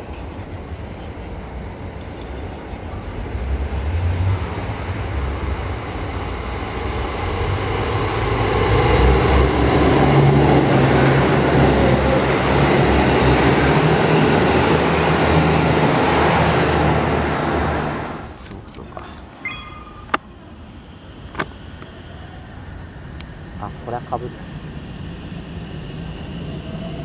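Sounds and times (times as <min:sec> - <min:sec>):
train rumbling on rails: 0:00.0 - 0:27.0.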